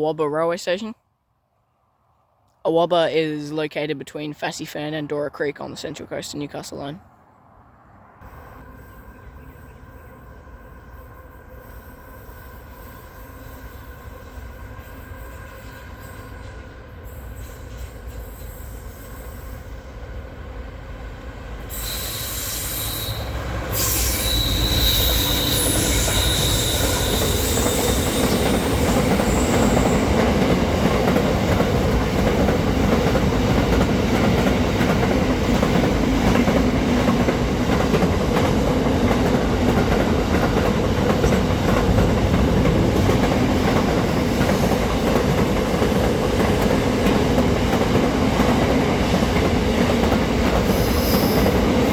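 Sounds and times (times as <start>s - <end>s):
train wheels rumbling on track: 8.2s - 51.9s
high wheel squeal: 21.7s - 30.0s.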